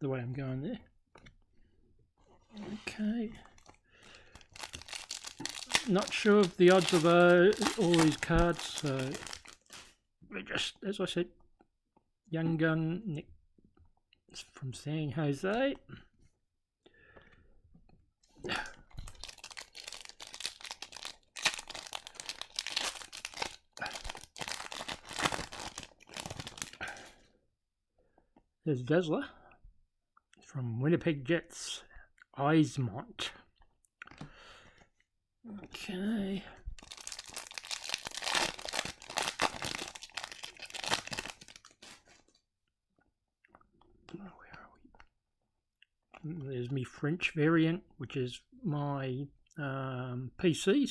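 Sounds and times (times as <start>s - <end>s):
foil wrapper crinkling and tearing: 3.6s - 9.9s, 19.0s - 27.1s, 36.8s - 42.4s.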